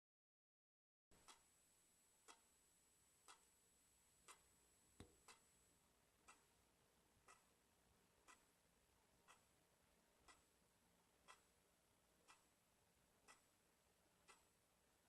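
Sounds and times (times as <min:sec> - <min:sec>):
clock ticking: 0:01.2 - 0:01.4, 0:02.2 - 0:02.4, 0:03.2 - 0:03.4, 0:05.0 - 0:05.5, 0:06.2 - 0:06.6, 0:07.2 - 0:07.6, 0:08.2 - 0:08.6, 0:09.2 - 0:09.6, 0:10.2 - 0:11.6, 0:12.2 - 0:12.6, 0:13.2 - 0:13.6, 0:14.2 - 0:14.6.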